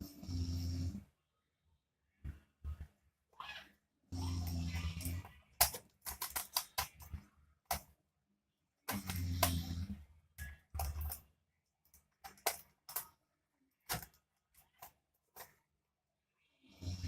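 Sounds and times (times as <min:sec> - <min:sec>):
plastic puzzle cube clicking turns: 0:05.6 - 0:07.9.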